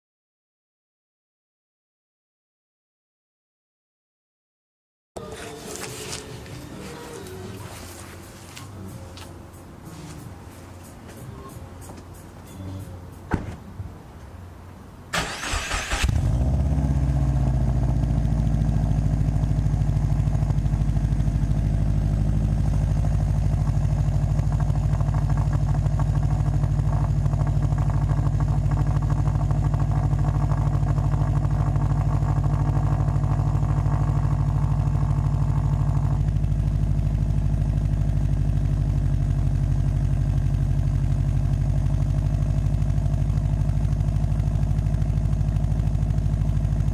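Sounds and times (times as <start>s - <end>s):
car engine cranking and idling: 5.2s - 46.9s.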